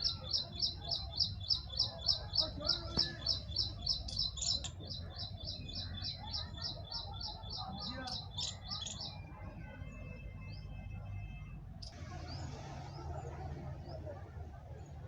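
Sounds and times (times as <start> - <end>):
small bird chirping: 0.0 - 9.2.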